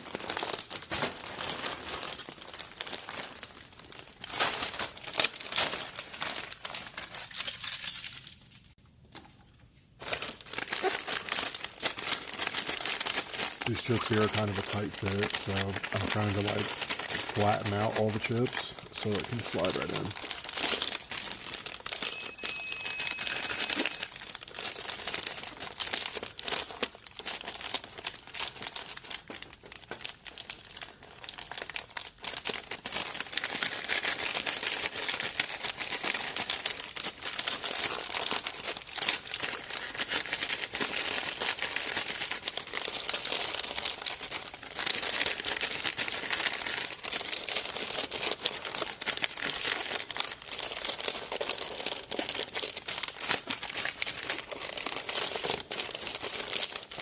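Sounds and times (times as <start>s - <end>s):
foil bags crinkling: 0.0s - 57.0s
steady high beep: 22.0s - 24.1s.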